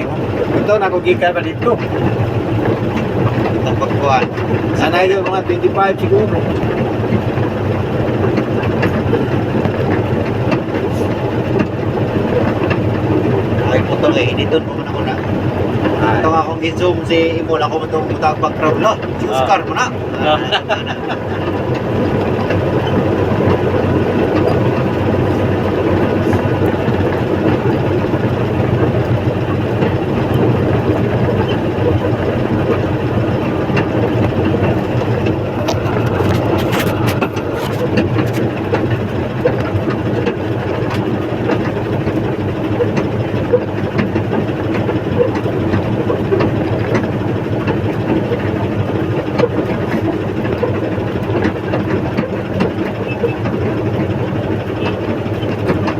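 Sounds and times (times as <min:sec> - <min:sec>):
diesel engine running: 0:00.0 - 0:55.9.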